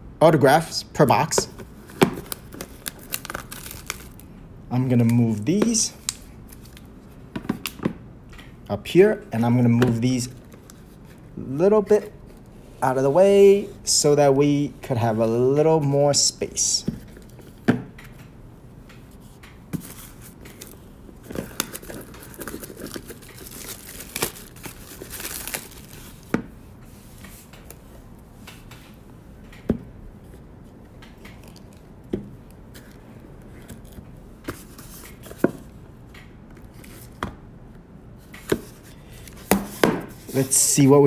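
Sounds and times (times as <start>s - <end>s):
packaging rustling and tearing: 1.6s - 4.3s, 19.8s - 26.3s.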